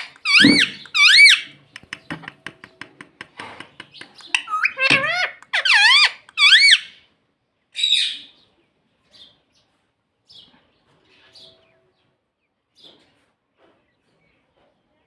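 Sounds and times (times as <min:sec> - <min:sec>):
parrot calling: 0:00.0 - 0:01.6, 0:04.1 - 0:07.1.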